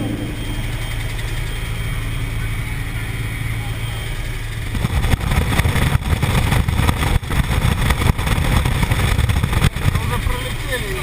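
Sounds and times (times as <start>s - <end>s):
aircraft engine drone: 0.0s - 11.0s
wind buffeting microphone: 4.6s - 11.0s.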